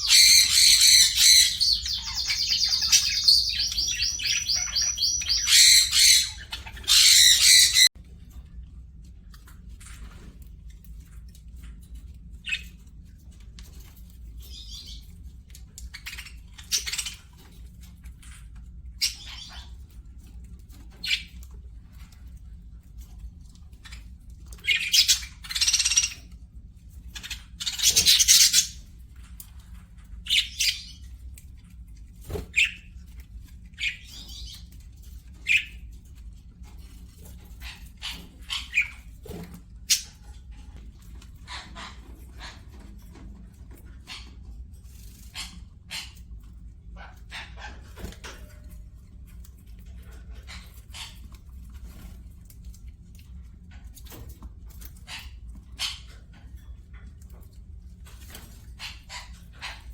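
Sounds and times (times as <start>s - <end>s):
bird chirps: 0.0s - 7.9s
bird squawks: 0.0s - 7.9s
bird trilling: 0.0s - 7.9s.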